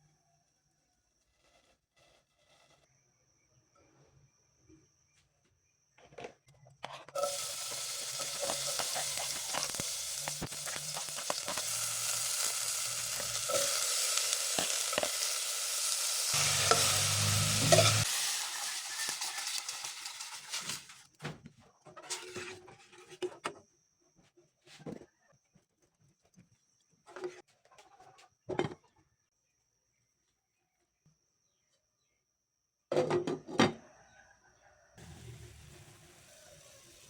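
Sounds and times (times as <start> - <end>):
utensil clicking in pan: 7.2 - 16.0
fish frying in hot oil: 7.2 - 20.9, 35.0 - 37.0.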